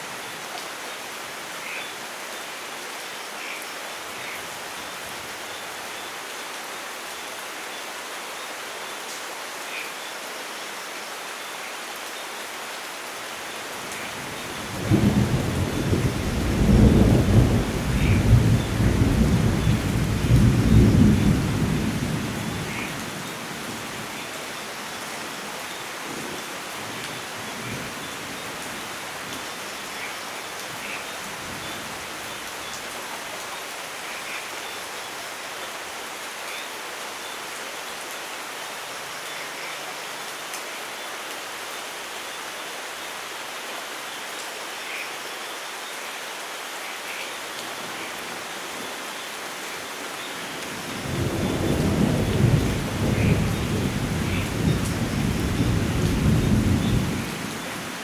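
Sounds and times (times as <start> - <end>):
steady rain: 0.0 - 58.0
thunder rumbling: 14.6 - 22.8, 50.9 - 57.6.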